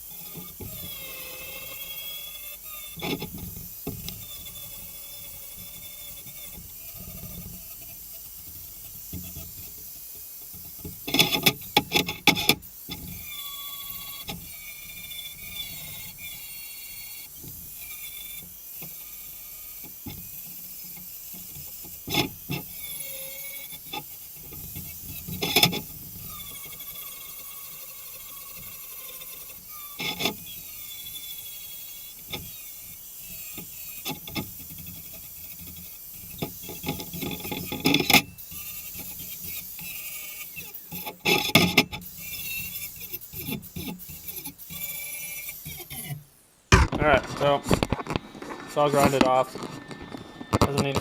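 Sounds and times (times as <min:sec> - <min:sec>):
angle grinder grinding metal: 0:00.0 - 0:51.0.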